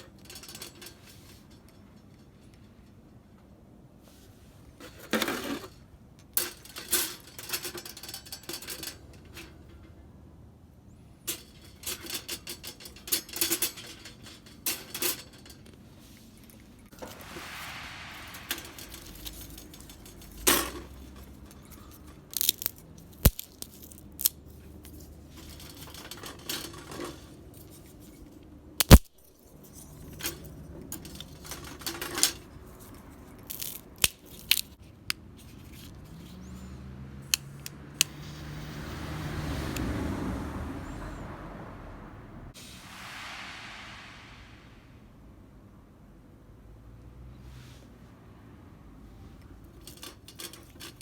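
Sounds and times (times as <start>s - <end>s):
metal plates clinking and scraping: 0.0s - 3.0s, 4.8s - 10.0s, 11.2s - 34.8s, 49.6s - 51.0s
low hum: 16.9s - 22.1s, 42.1s - 45.7s.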